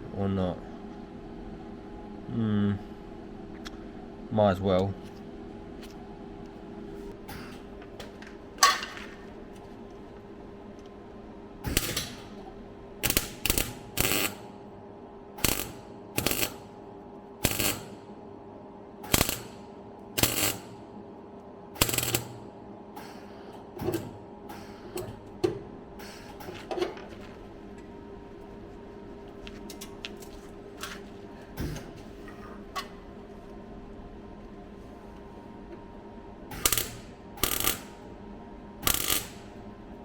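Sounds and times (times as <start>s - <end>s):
welder steady hum: 0.0s - 40.0s
welder crackling bursts: 13.0s - 14.4s, 15.4s - 16.7s, 17.4s - 18.0s, 19.1s - 19.6s, 20.2s - 20.7s, 21.8s - 22.4s, 36.6s - 37.9s, 38.8s - 39.5s.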